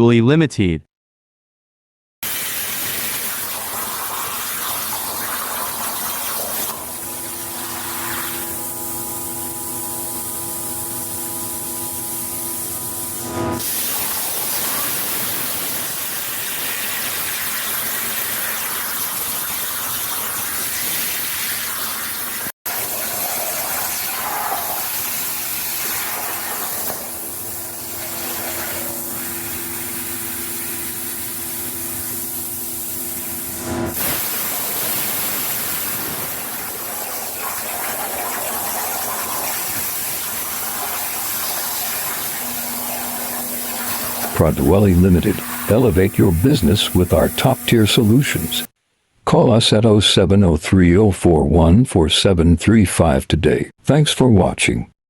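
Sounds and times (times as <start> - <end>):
cnc machine hissing rush: 23.0 - 48.7
multi-tone machine whine: 41.8 - 48.7.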